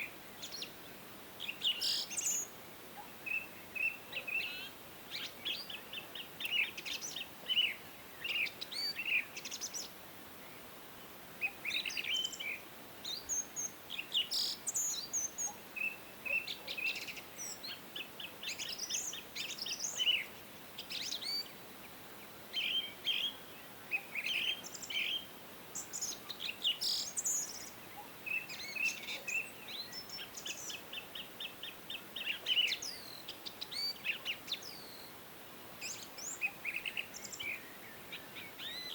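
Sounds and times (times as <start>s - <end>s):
faint steady hiss: 0.0s - 38.9s
songbirds chirping and singing: 11.4s - 35.2s.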